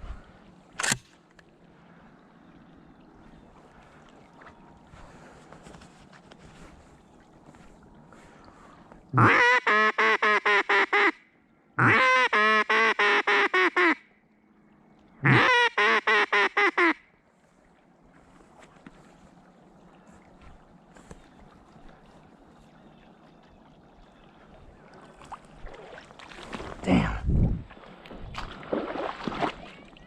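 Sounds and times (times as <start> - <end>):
duck quacking: 9.2 - 11.2, 11.8 - 14.0, 15.2 - 17.0.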